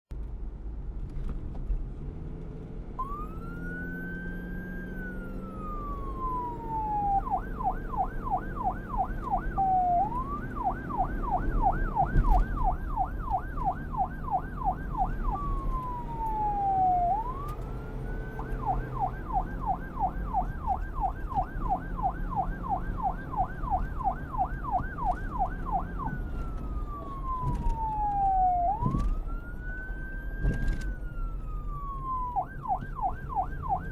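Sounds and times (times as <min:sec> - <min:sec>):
police siren wailing and yelping: 0:03.0 - 0:33.9.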